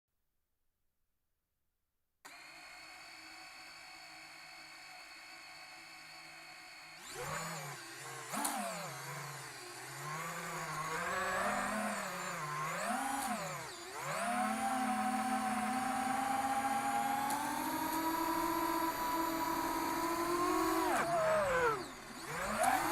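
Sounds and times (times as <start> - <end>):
drone motors whining: 5.9 - 22.9.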